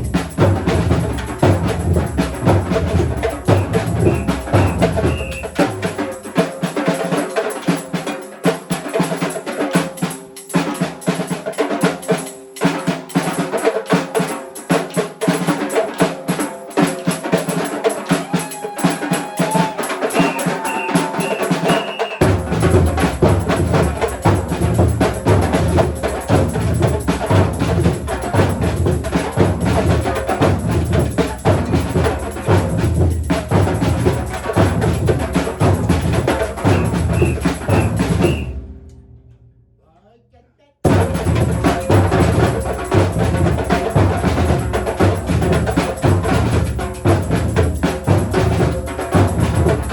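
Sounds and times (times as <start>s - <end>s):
higher drums and bells: 0.0s - 38.9s, 40.8s - 49.9s
short high tones: 3.5s - 5.8s, 20.0s - 22.2s, 36.6s - 38.6s.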